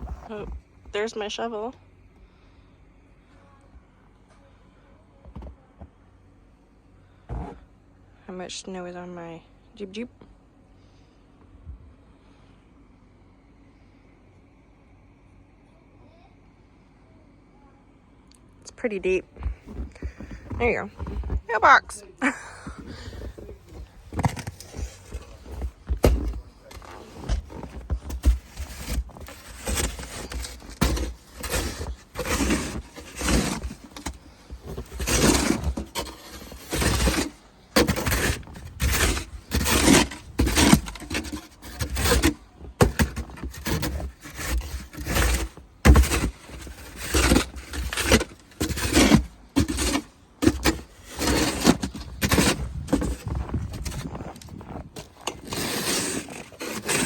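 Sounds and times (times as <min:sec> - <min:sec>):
boots crunching through snow: 0:19.4 - 0:57.0.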